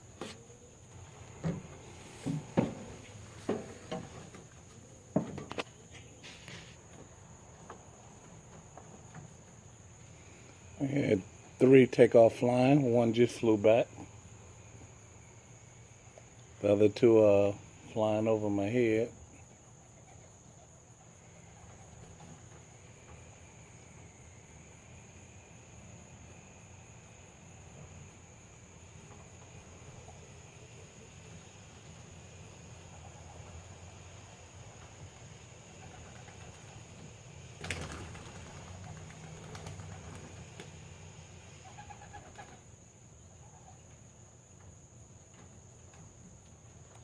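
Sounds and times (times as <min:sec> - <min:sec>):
pigeon wings flapping: 0:35.8 - 0:37.0, 0:37.6 - 0:40.8, 0:41.7 - 0:42.6
pigeon calls: 0:41.6 - 0:42.6.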